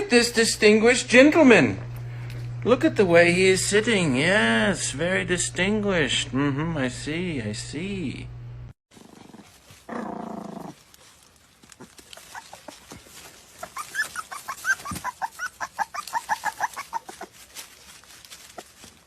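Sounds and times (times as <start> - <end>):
high-pitched animal calls: 13.6 - 17.3.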